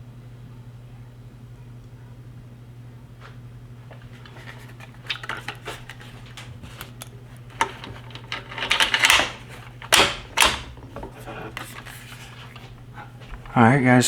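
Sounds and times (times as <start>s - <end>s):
steady low hum: 0.0s - 14.0s
metal rattling and scraping: 3.9s - 13.7s.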